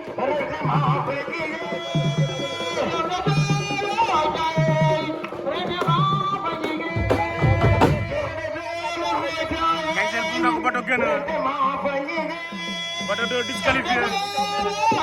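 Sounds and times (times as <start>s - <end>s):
hand drums beating: 0.0s - 10.8s, 12.6s - 15.0s
heavy low drum: 5.8s - 9.6s.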